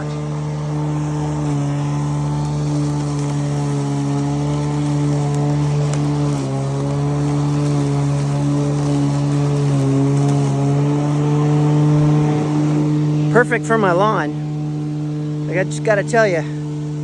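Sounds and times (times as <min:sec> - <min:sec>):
electric lawn mower whirring: 0:00.0 - 0:17.0.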